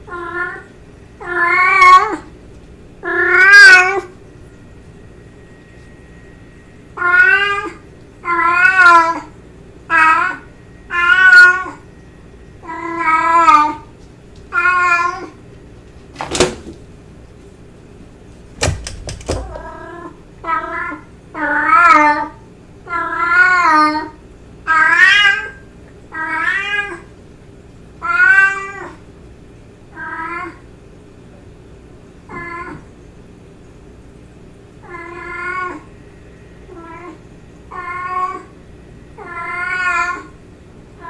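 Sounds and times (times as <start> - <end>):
cat meowing: 0.1 - 2.3, 3.0 - 4.1, 7.0 - 9.3, 9.9 - 11.8, 12.6 - 13.9, 14.5 - 15.4, 18.8 - 27.1, 28.0 - 29.0, 30.0 - 30.6, 34.8 - 35.9, 36.7 - 38.6, 39.2 - 40.4
sharp clicks: 18.6 - 19.7.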